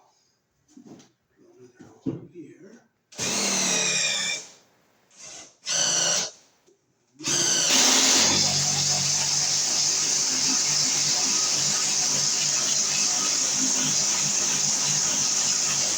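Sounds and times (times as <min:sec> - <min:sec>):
electric drill boring: 0:03.2 - 0:04.5, 0:05.2 - 0:06.3, 0:07.2 - 0:15.9.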